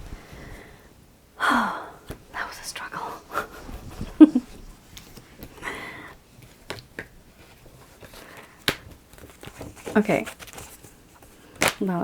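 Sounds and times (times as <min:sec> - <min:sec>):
cards being shuffled: 0:06.4 - 0:11.9.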